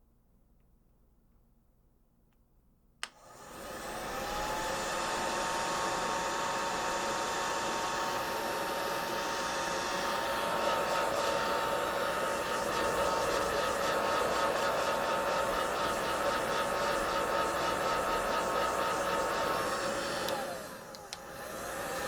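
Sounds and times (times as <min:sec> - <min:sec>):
blow dryer switch click: 0:03.0 - 0:03.2, 0:20.2 - 0:21.3
blow dryer motor whining: 0:03.0 - 0:22.0.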